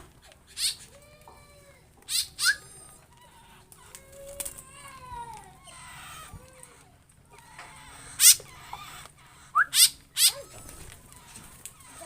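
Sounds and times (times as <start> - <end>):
birds squeaky calls: 0.0 - 1.1, 2.0 - 12.0.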